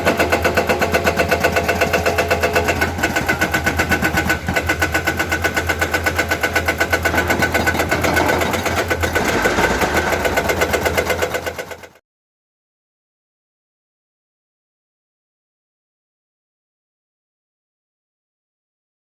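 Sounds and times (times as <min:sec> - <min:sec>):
diesel engine running: 0:00.0 - 0:11.9
hydraulic breaker hammering: 0:00.0 - 0:11.9.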